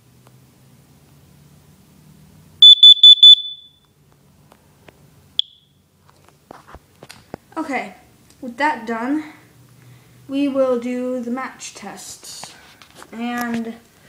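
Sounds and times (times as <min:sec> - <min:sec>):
alarm high-pitched beeps: 0:02.6 - 0:03.8
alarm short chirp: 0:02.6 - 0:03.8.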